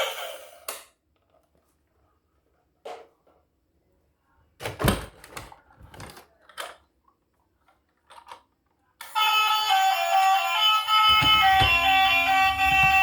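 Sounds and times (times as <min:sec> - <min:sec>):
plastic objects clicking and clacking: 0:04.6 - 0:08.8
music: 0:09.2 - 0:13.0.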